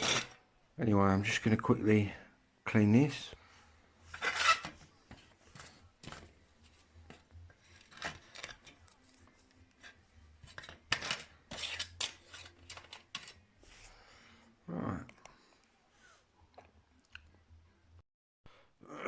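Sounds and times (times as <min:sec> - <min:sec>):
scraping of small part: 0:04.1 - 0:06.3, 0:07.1 - 0:13.9.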